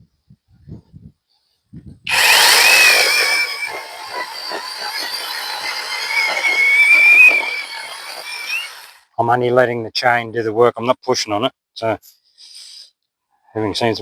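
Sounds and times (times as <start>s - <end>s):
electric chainsaw cutting a log: 2.1s - 9.1s.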